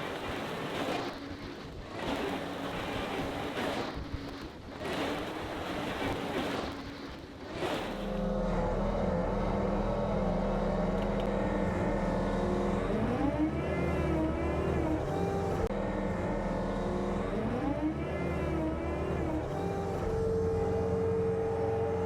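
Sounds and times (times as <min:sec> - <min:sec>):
diesel engine running: 0:08.1 - 0:22.0.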